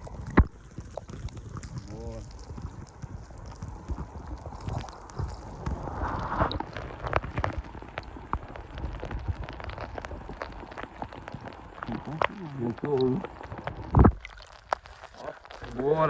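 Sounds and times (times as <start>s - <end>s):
low rumble: 0.0s - 14.3s.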